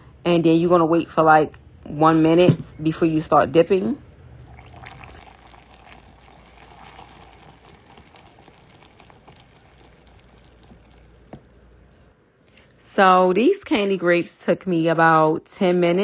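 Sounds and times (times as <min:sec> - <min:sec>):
hot syrup crackling and sizzling: 0:02.5 - 0:12.2.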